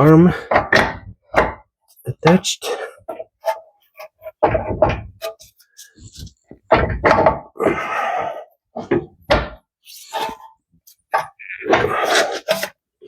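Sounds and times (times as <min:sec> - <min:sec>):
metal thunks and knocks: 0:00.4 - 0:01.8, 0:04.2 - 0:07.6, 0:08.8 - 0:09.7.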